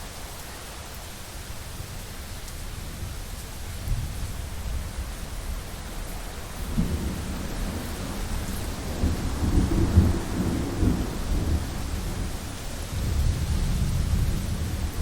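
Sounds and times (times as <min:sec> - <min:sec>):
steady rain hiss: 0:00.0 - 0:15.0
thunder rolling: 0:06.6 - 0:12.3.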